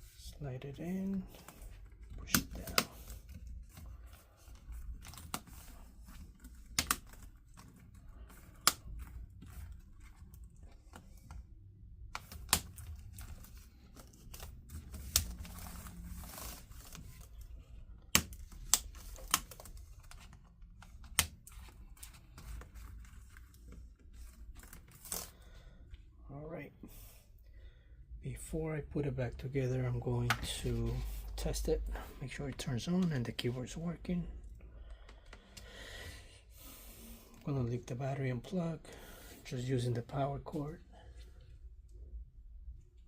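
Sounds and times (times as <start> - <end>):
plastic laptop parts clicking: 4.5 - 11.4.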